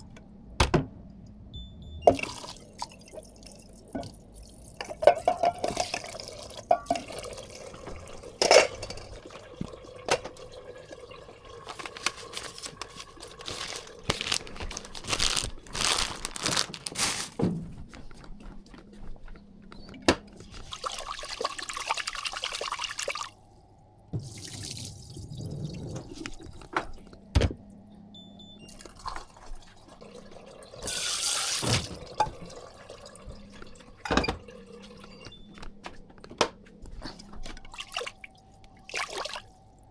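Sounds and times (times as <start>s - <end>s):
water splashing in a sink: 20.6s - 23.4s, 24.2s - 27.0s, 37.6s - 39.6s.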